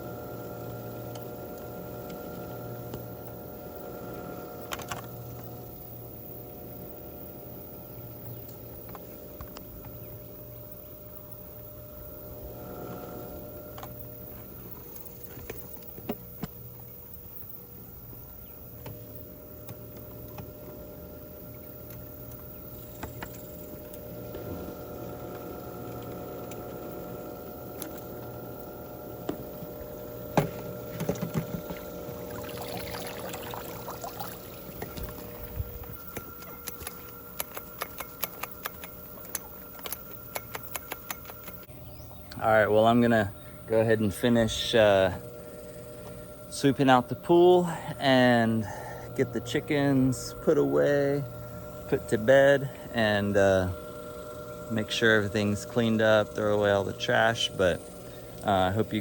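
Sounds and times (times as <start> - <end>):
pool filter pump humming: 0.0 - 59.0.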